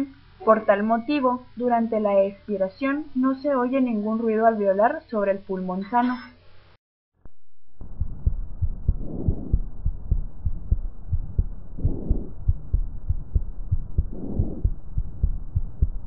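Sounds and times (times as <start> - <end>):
heartbeats thudding: 7.8 - 16.0.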